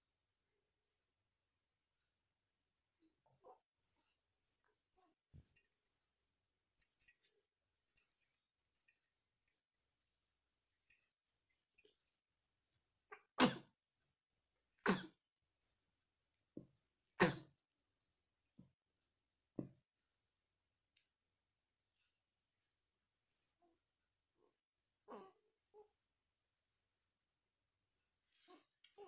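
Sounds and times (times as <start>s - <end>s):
baby sneezing: 13.4s - 13.7s.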